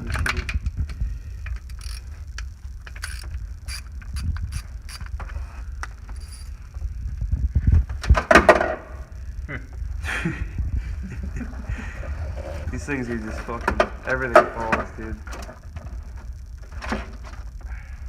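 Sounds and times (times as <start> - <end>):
ratchet metallic clicks: 1.4 - 5.2.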